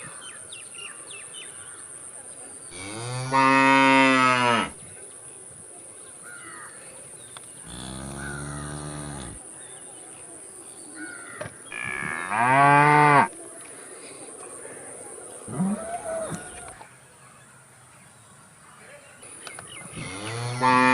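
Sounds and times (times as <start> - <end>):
cows mooing: 2.8 - 4.7, 7.6 - 9.4, 20.0 - 20.9.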